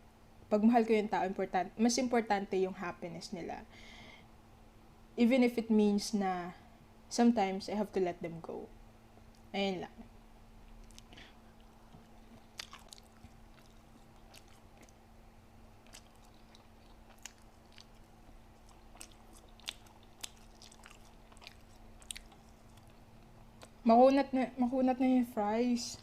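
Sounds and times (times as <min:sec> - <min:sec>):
person chewing with wet mouth clicks: 0:10.6 - 0:15.0, 0:15.7 - 0:23.8.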